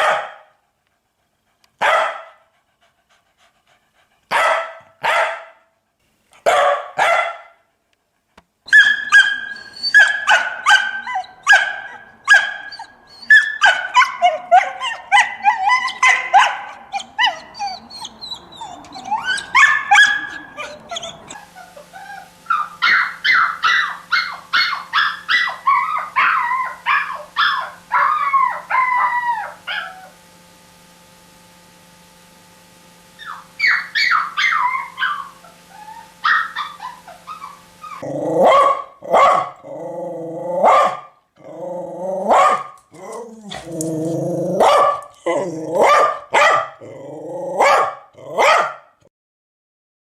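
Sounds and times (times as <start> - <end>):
dogs barking: 0.0 - 0.5, 1.8 - 2.4, 4.3 - 5.6, 6.4 - 7.6, 8.7 - 30.0, 33.2 - 39.6, 40.6 - 41.2, 42.2 - 43.7, 44.5 - 46.9, 47.6 - 48.9
steady electrical hum: 0.0 - 49.0
dog yelping and whining: 8.7 - 30.2, 33.2 - 39.6, 42.0 - 48.8.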